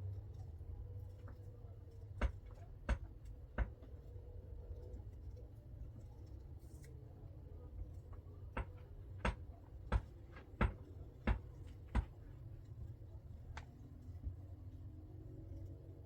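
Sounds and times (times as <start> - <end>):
sharp knocks: 8.6 - 12.2.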